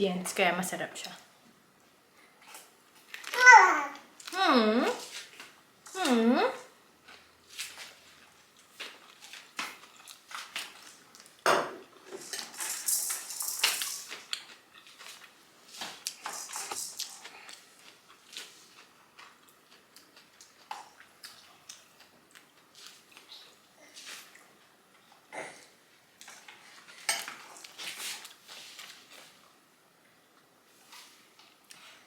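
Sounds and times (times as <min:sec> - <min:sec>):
dishes and utensils clinking: 0:11.4 - 0:14.4, 0:16.1 - 0:17.3, 0:26.3 - 0:27.8.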